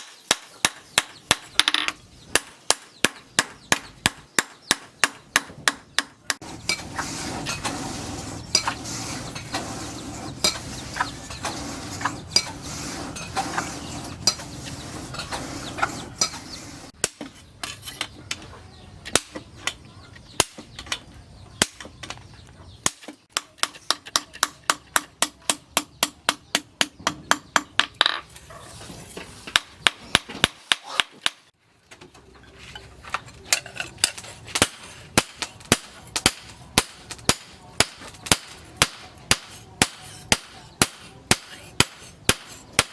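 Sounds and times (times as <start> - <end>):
hammer striking steel on anvil: 33.5 - 42.9.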